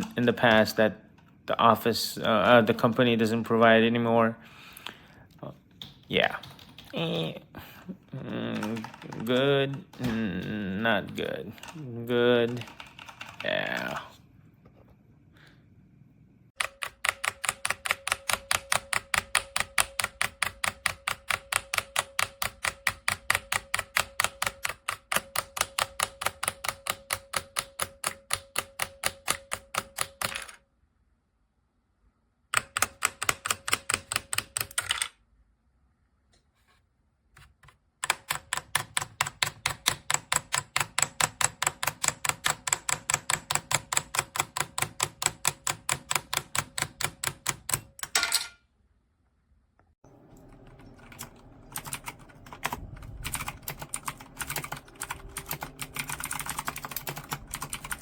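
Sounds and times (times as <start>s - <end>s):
mechanical keyboard typing: 5.8s - 7.0s, 8.5s - 10.2s, 11.2s - 14.0s, 16.6s - 30.6s, 32.5s - 35.1s, 38.0s - 48.1s, 50.3s - 58.0s.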